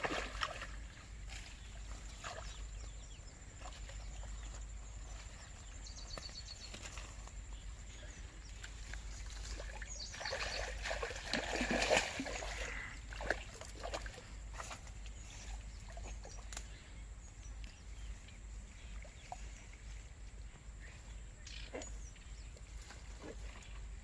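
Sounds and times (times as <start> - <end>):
water splashing: 0.0 - 2.7, 8.6 - 14.9.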